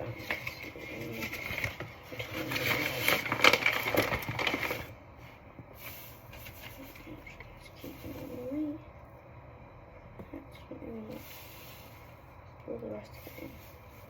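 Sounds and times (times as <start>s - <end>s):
bag rustling and crackling: 0.1s - 5.0s.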